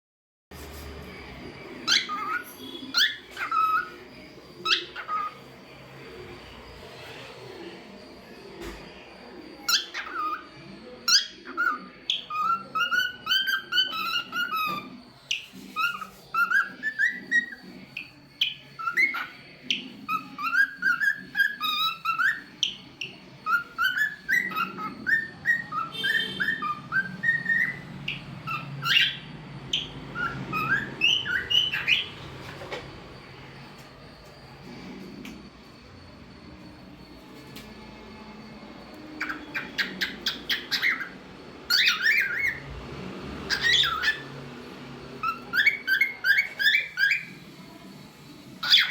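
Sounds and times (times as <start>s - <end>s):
sharp bird calls: 1.4s - 6.8s, 9.3s - 34.2s, 39.0s - 42.8s, 43.4s - 47.5s
cockatiel whistling and chirping: 1.7s - 5.5s, 9.4s - 32.8s, 39.2s - 42.6s, 43.4s - 44.4s, 45.2s - 47.5s, 48.4s - 48.9s.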